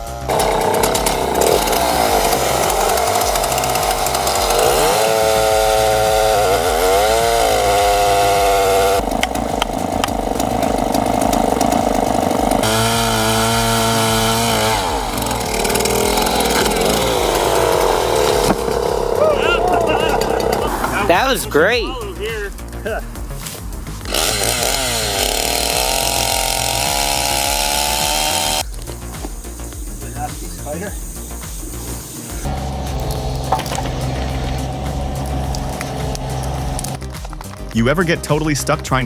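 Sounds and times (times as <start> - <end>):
wood-cutting machine engine under load: 0.2 - 21.1, 24.1 - 28.6, 32.5 - 37.0.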